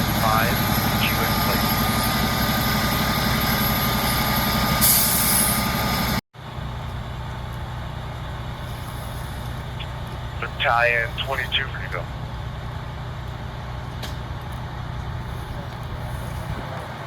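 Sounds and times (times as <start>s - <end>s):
truck engine idling: 0.0s - 17.0s.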